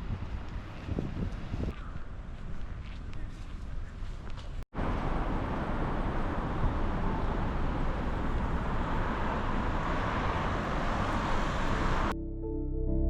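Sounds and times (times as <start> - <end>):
vehicle running noise: 4.7 - 12.2.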